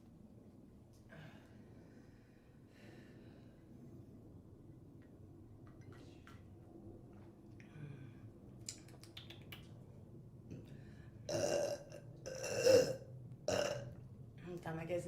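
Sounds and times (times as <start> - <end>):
woman burping: 11.3 - 13.9.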